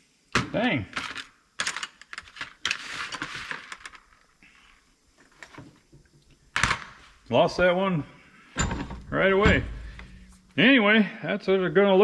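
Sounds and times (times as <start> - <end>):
metal parts and tools clicking: 1.0 - 2.8
scraping rustle: 2.1 - 5.8.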